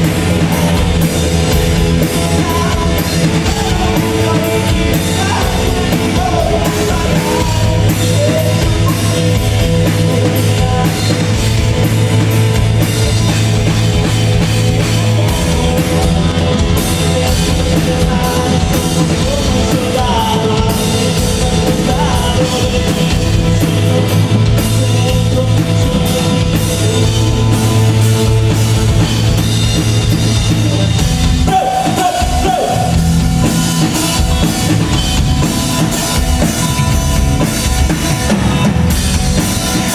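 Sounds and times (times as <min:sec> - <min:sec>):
loud rock music: 0:00.0 - 0:39.9.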